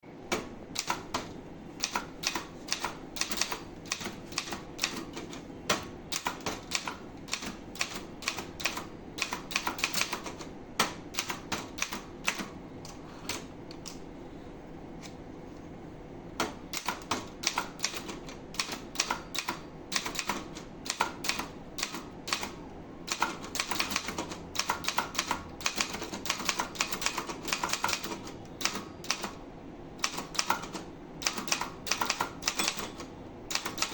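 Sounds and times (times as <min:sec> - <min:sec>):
typewriter key strikes: 0:30.0 - 0:33.9.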